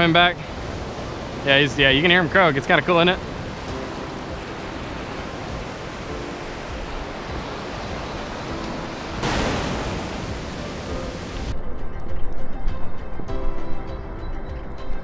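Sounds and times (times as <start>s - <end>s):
surf: 0.0s - 11.6s
wind: 0.0s - 15.0s.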